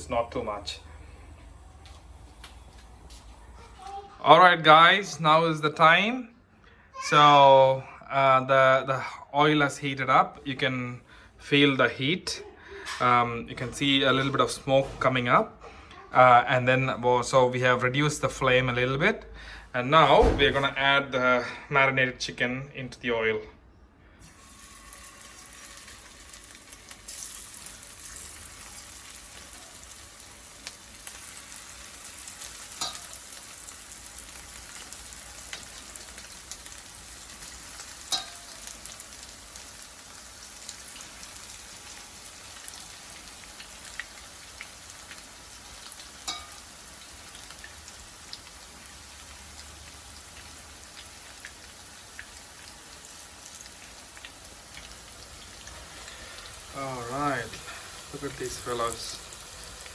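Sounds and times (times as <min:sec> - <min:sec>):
chicken deep-frying sizzle: 0:24.2 - 0:59.9.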